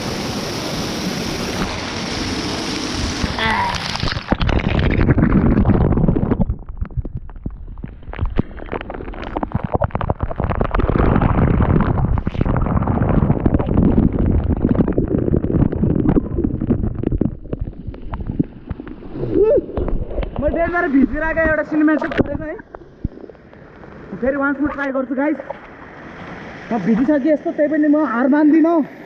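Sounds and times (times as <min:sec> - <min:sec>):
waterfall spray low rumble: 0:00.0 - 0:19.2
water hitting microphone crackling: 0:00.0 - 0:29.0
wind buffeting microphone: 0:10.6 - 0:18.5.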